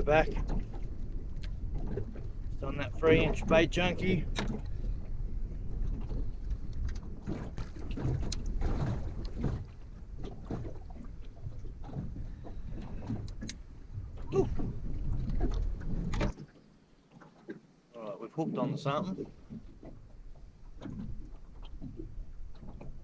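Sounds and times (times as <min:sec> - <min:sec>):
wind rumbling on microphone: 0:00.0 - 0:16.4.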